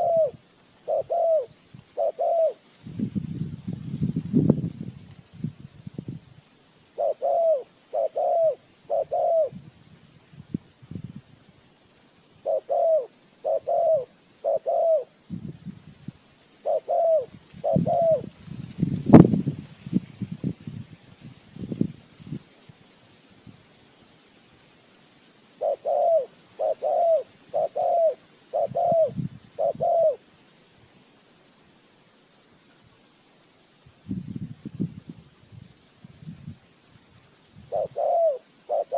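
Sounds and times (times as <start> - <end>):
dove cooing: 0.0 - 2.7, 7.0 - 9.6, 12.4 - 15.2, 16.6 - 18.4, 25.6 - 30.3, 37.6 - 38.9.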